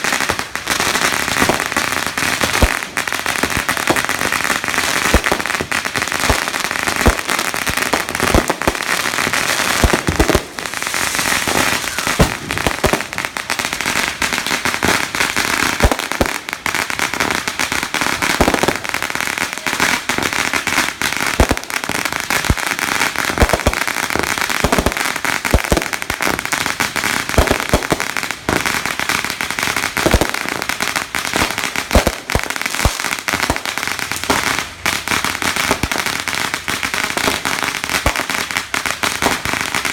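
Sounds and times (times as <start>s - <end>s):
fireworks bangs: 0.0s - 39.9s
fireworks crackling: 0.0s - 39.9s.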